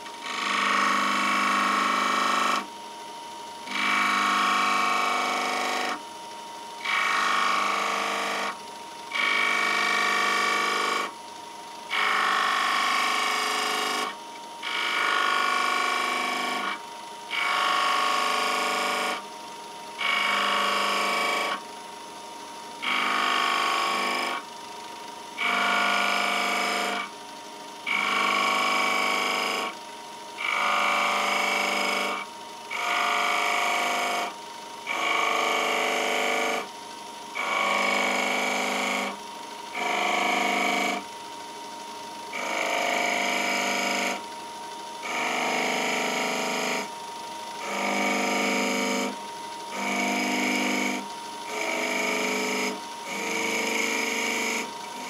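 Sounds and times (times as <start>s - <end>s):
wood lathe turning: 0.0s - 2.6s, 6.8s - 11.1s, 11.9s - 19.1s, 25.4s - 27.0s, 27.9s - 28.2s, 30.4s - 34.2s.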